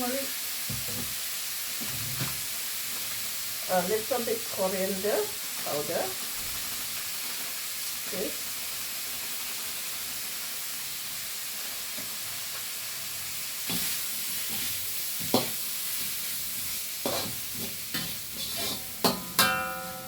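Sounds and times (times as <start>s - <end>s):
food sizzling in a pan: 0.0s - 20.0s
spatula scraping a pan: 13.7s - 20.0s.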